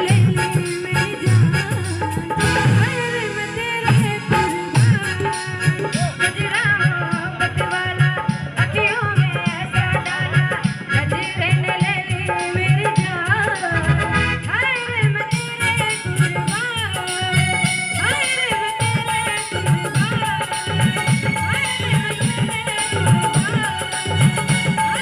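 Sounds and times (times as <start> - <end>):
hand drum beats: 0.0 - 7.4, 15.3 - 25.0.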